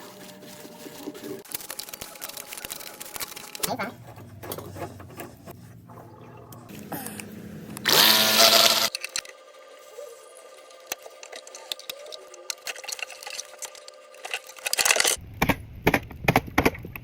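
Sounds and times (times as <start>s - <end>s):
power tool motor whine: 7.8s - 9.0s.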